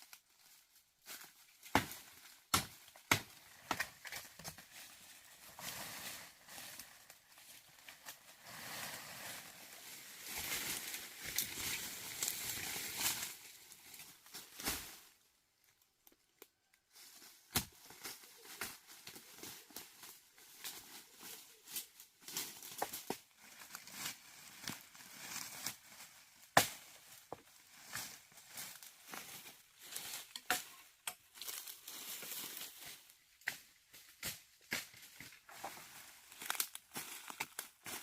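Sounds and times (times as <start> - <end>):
rustling and crinkling handling: 16.5 - 38.0.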